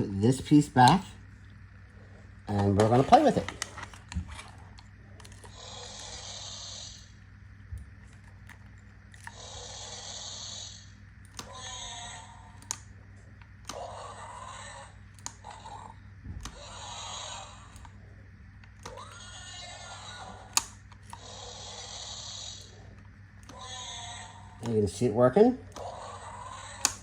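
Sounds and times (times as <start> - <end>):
steady low hum: 0.0 - 27.0
electronic creature cries from toy: 9.3 - 10.8, 11.4 - 12.6, 13.7 - 15.9, 16.5 - 17.7, 18.9 - 20.6, 21.2 - 22.8, 23.5 - 24.7, 25.8 - 27.0
sharp clicks: 20.4 - 21.3, 25.7 - 27.0.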